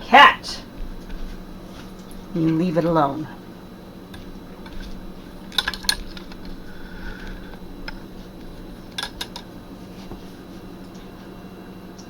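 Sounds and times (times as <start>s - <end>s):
steady low hum: 0.0s - 12.0s
kitchenware clinking: 4.2s - 9.5s.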